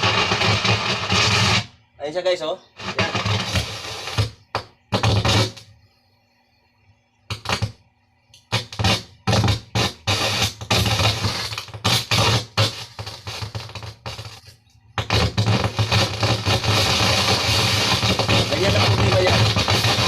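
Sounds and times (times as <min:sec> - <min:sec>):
amplifier hissing and crackling: 0:00.0 - 0:20.0
steady low hum: 0:05.6 - 0:11.1.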